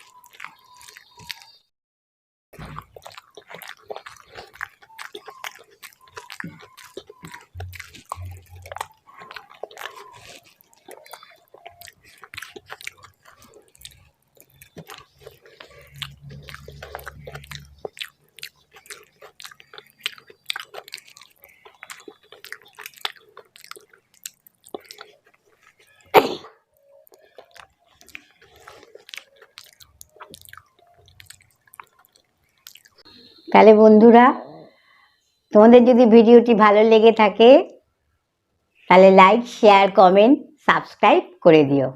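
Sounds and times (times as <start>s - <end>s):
wet mouth clicks and smacks: 0.0s - 1.6s, 2.6s - 26.1s, 26.8s - 33.1s
chewing food: 0.0s - 1.7s, 2.6s - 33.5s.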